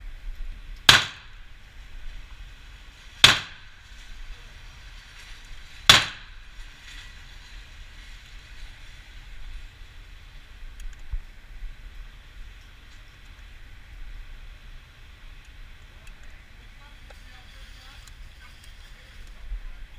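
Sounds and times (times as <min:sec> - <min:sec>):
pistol shots: 0:00.9 - 0:01.4, 0:03.2 - 0:03.7, 0:05.9 - 0:06.3.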